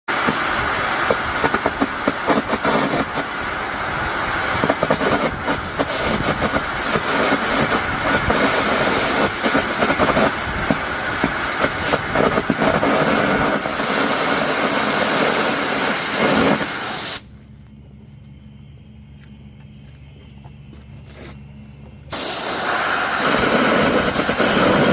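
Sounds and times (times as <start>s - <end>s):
electric arc crackling and popping: 0.1s - 17.2s, 22.1s - 24.9s
compressed air blast: 0.1s - 17.3s, 22.1s - 24.9s
steady hum: 0.1s - 24.9s.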